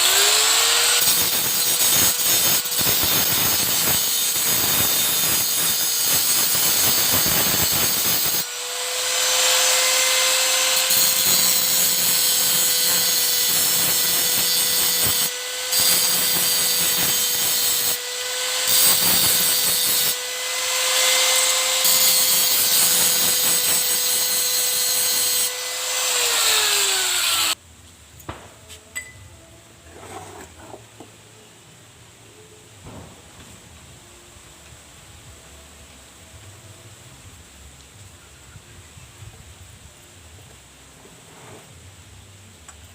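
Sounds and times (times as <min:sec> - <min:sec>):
high-speed motorised tool: 0:00.0 - 0:27.6.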